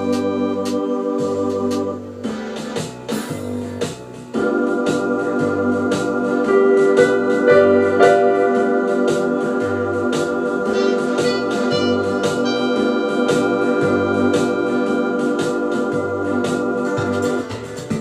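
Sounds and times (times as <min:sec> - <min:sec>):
electronic organ chords: 0:00.0 - 0:18.0
light percussion beat: 0:00.0 - 0:18.0
pulsing bass note: 0:09.6 - 0:17.4.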